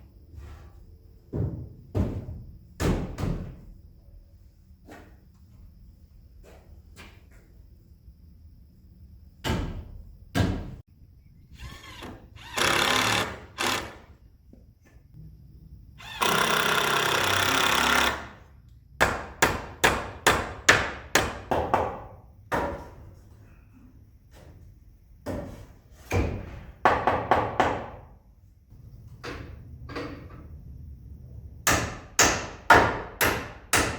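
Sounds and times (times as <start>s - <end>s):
hissing tool noise: 11.6s - 14.2s.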